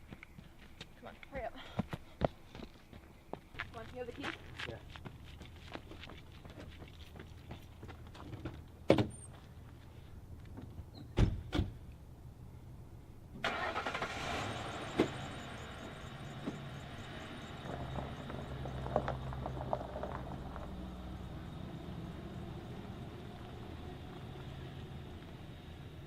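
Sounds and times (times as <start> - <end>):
car engine starting and running: 13.4 - 26.0
car doors shutting: 13.5 - 19.1.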